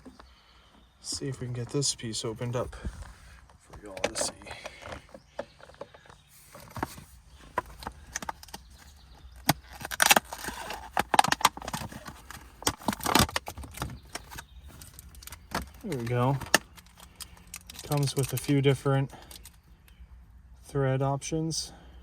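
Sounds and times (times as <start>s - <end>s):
packaging rustling: 6.5s - 18.5s.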